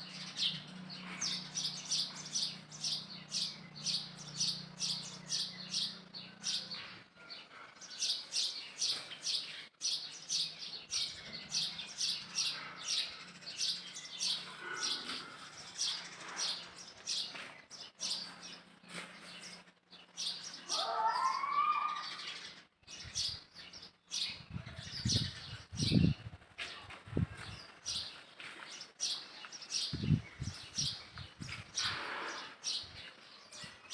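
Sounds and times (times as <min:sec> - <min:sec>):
small birds chirping: 0:00.0 - 0:33.9
rising and falling bird call: 0:20.3 - 0:22.6.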